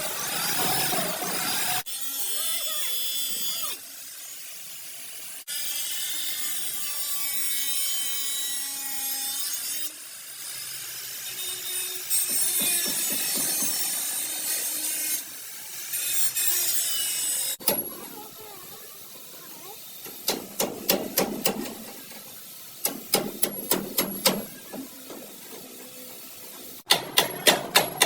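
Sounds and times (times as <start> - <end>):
abrasive tool rasping on sheet metal: 5.5 - 18.3, 19.8 - 28.0.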